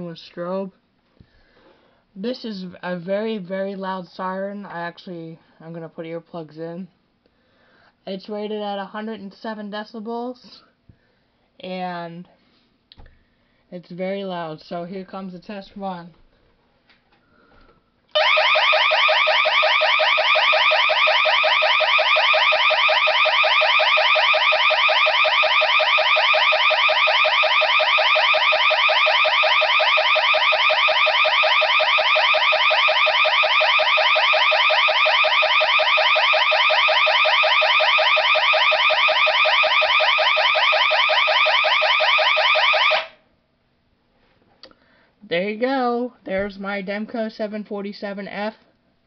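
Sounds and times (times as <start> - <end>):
siren warbling alarm tone: 18.1 - 43.2.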